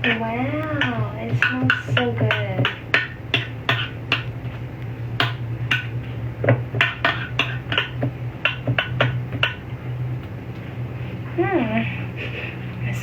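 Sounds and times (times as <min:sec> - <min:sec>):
utensils tapping against dish: 0:00.0 - 0:04.6, 0:05.2 - 0:09.7
steady low hum: 0:00.0 - 0:13.0.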